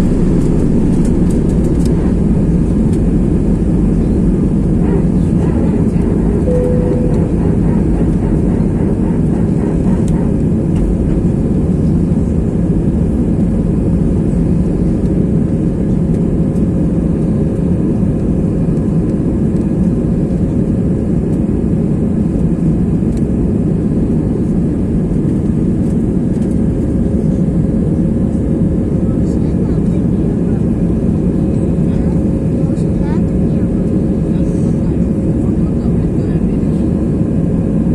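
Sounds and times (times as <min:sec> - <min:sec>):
faint steady hum: 0:00.0 - 0:13.6
airliner engines low rush: 0:00.0 - 0:37.9.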